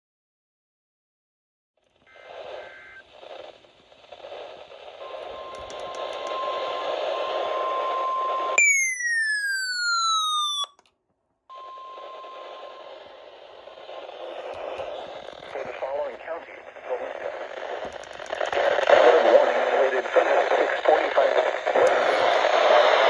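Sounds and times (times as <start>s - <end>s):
radio static: 2.0s - 8.6s, 11.6s - 23.0s
paired data-burst tones: 2.1s - 8.6s
loud falling tone: 6.3s - 10.7s.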